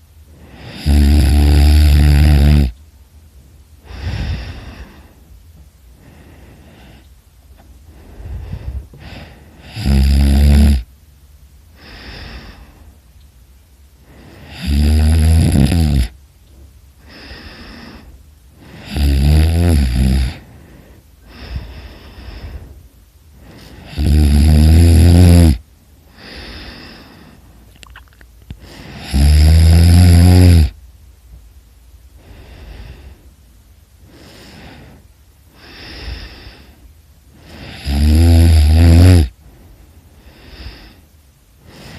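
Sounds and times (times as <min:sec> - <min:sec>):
person snoring: 0:00.4 - 0:02.8, 0:03.8 - 0:05.2, 0:07.9 - 0:10.9, 0:14.0 - 0:16.2, 0:17.0 - 0:20.6, 0:23.4 - 0:27.4, 0:28.6 - 0:30.8, 0:37.4 - 0:39.4
soft breathing: 0:03.8 - 0:09.9, 0:11.6 - 0:14.7, 0:16.0 - 0:19.1, 0:20.1 - 0:24.0, 0:26.0 - 0:29.2, 0:32.0 - 0:38.0, 0:39.3 - 0:41.9.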